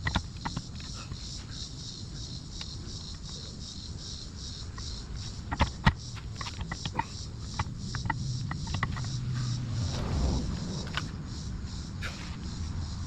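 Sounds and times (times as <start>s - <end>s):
steady low rumble: 1.7s - 13.0s
high pulsing chirr: 6.8s - 13.0s.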